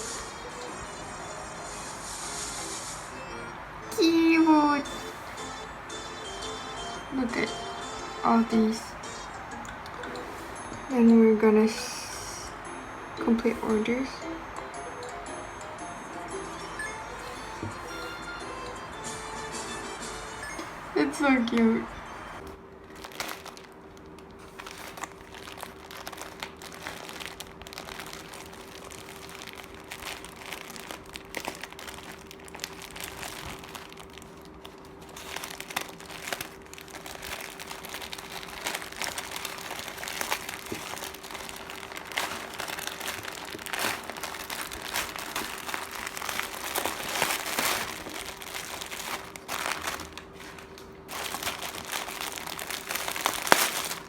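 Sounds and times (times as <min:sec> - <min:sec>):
faint steady hum: 0:00.0 - 0:54.0
packaging crinkling and rustling: 0:22.8 - 0:54.0.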